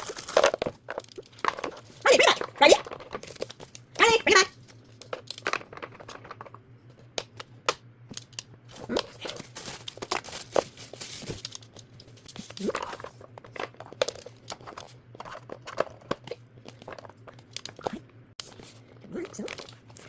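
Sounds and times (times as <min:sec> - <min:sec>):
packaging crinkling and tearing: 0:00.0 - 0:02.2, 0:08.2 - 0:17.9.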